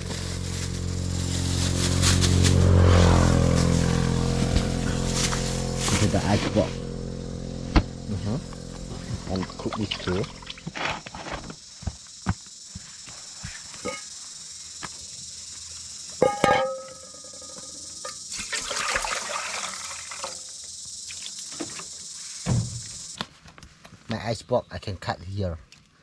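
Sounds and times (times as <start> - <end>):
rustling: 0.0 - 6.9
high-pitched insect drone: 0.0 - 23.2.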